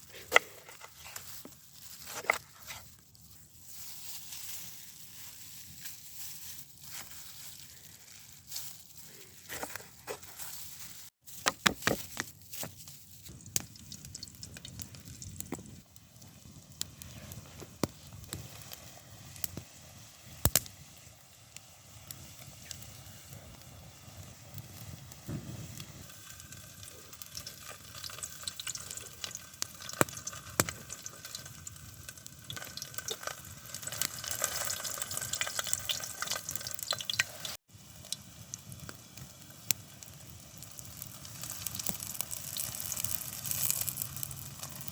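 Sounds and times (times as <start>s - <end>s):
food sizzling in a frying pan: 18.0s - 44.9s.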